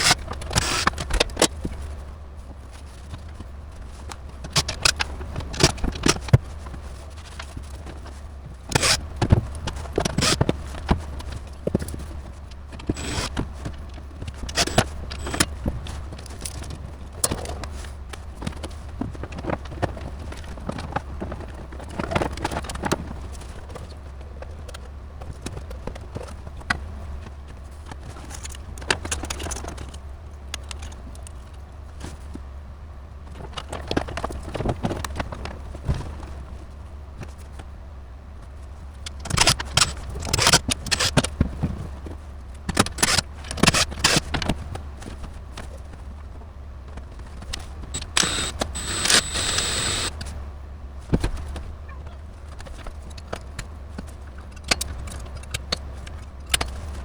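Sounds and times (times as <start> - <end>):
steady low hum: 48.0 - 50.2.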